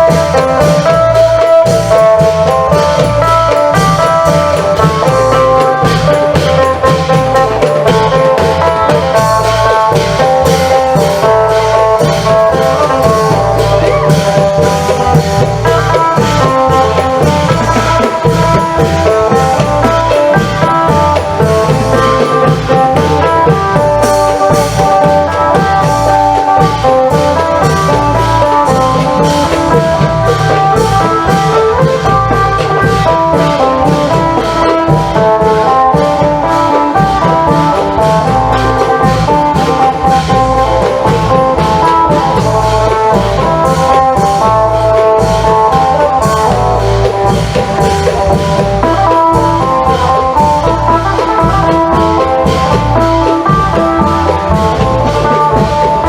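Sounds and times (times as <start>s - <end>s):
long drums and percussion: 0.0s - 56.0s.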